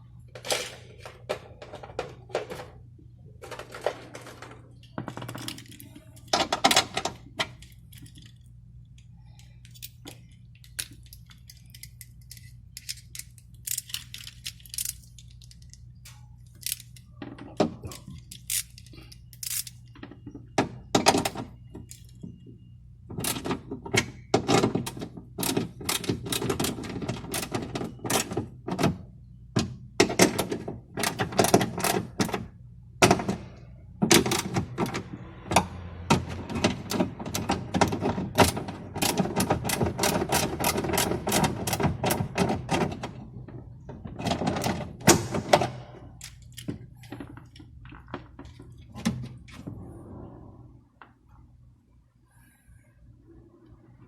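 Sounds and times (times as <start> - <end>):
clicks and knocks of tools: 3.4 - 22.2, 36.2 - 48.8.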